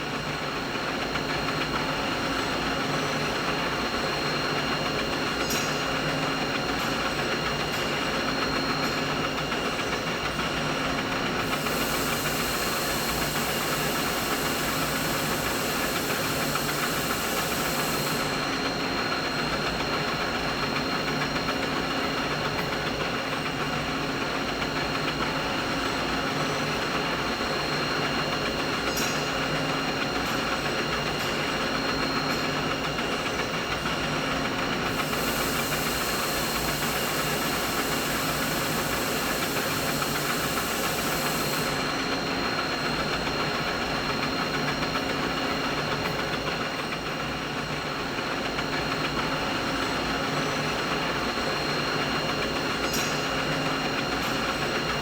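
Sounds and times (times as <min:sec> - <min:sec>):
machine whirring: 0:01.0 - 0:55.0
high hiss: 0:11.4 - 0:18.4, 0:34.9 - 0:42.1.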